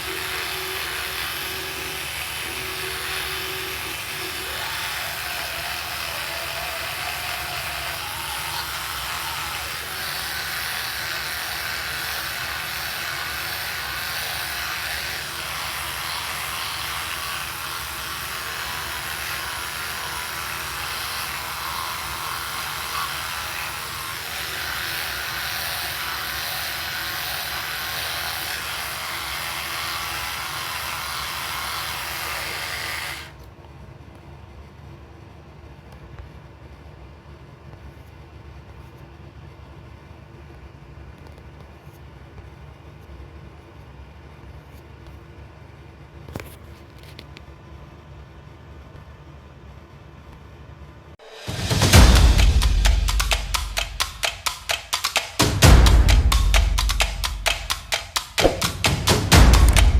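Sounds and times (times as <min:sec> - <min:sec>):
electric toothbrush buzzing: 0:00.0 - 0:33.4, 0:51.2 - 0:59.9.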